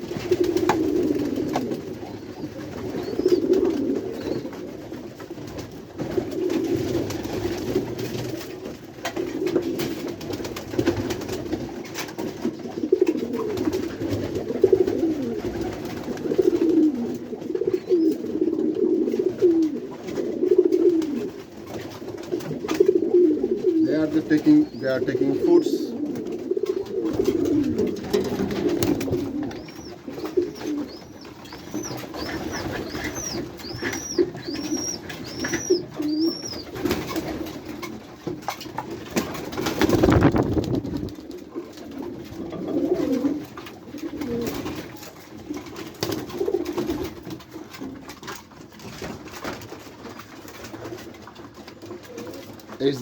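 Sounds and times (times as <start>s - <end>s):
pigeons cooing: 0.0s - 53.0s
high chirps: 29.5s - 36.7s.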